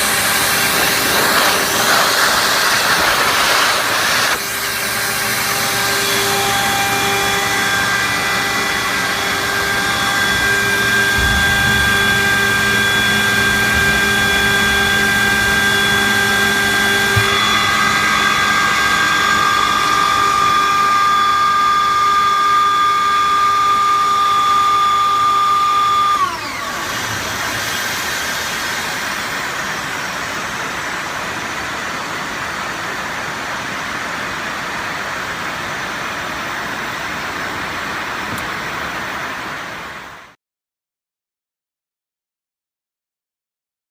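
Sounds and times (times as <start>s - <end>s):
steady rushing noise: 0.0s - 6.0s, 8.9s - 19.0s
air compressor whine: 0.0s - 40.4s.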